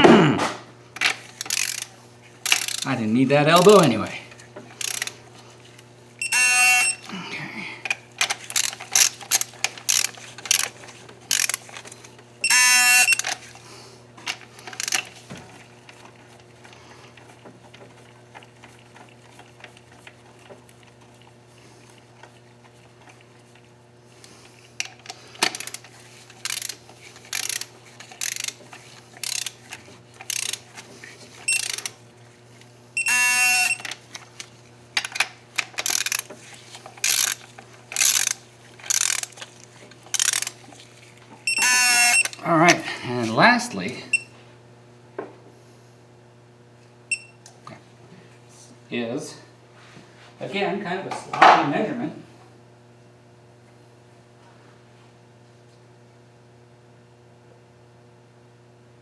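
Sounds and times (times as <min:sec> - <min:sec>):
socket ratchet clicking: 0:01.0 - 0:03.9, 0:04.8 - 0:05.2, 0:06.2 - 0:07.1, 0:08.2 - 0:13.4, 0:14.7 - 0:15.1, 0:26.4 - 0:28.6, 0:29.2 - 0:29.6, 0:30.2 - 0:30.6, 0:31.5 - 0:32.0, 0:33.0 - 0:36.3, 0:37.0 - 0:39.5, 0:40.1 - 0:40.6, 0:41.5 - 0:42.4
torque tool beep: 0:06.2 - 0:07.1, 0:12.4 - 0:13.4, 0:31.5 - 0:31.9, 0:33.0 - 0:33.9, 0:41.5 - 0:42.4, 0:44.1 - 0:44.3, 0:47.1 - 0:47.4.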